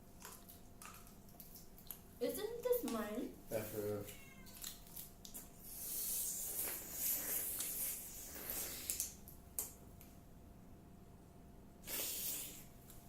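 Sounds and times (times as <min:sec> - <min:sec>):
soft rustling of food packaging: 0:03.0 - 0:05.7.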